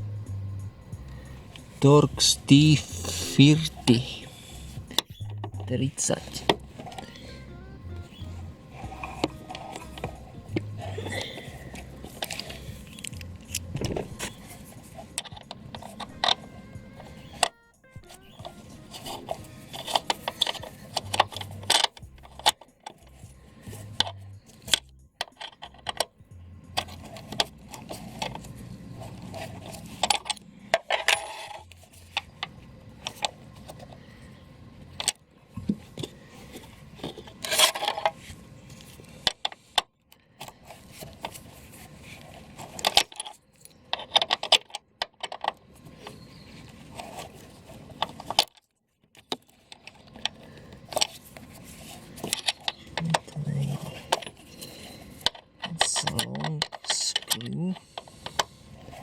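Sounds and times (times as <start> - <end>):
hand tools clinking on metal: 29.6 - 31.8.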